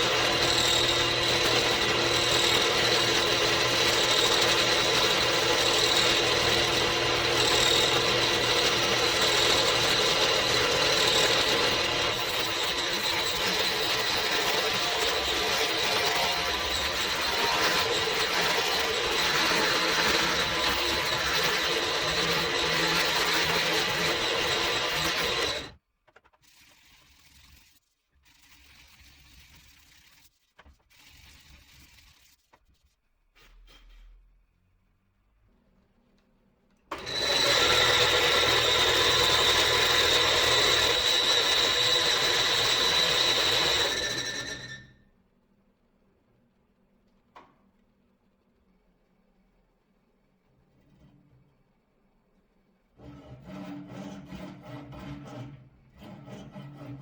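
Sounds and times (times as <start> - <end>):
power tool running: 0.0 - 25.8, 36.9 - 44.6.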